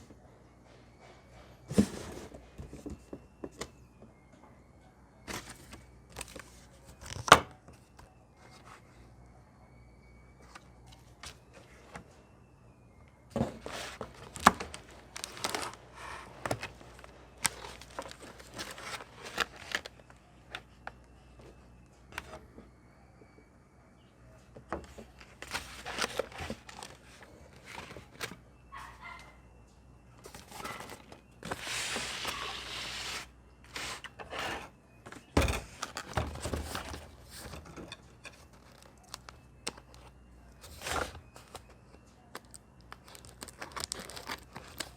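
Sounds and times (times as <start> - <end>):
packaging rustling and crinkling: 13.3 - 21.6, 24.8 - 28.4, 30.2 - 44.9.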